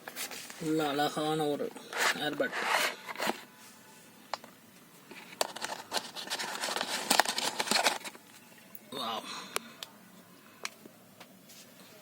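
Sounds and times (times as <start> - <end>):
packaging crinkling: 5.3 - 8.3.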